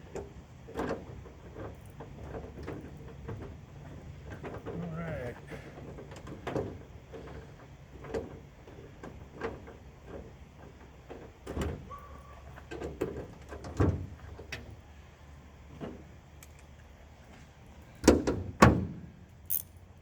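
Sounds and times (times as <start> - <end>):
metal clicks and knocks: 19.5 - 19.8.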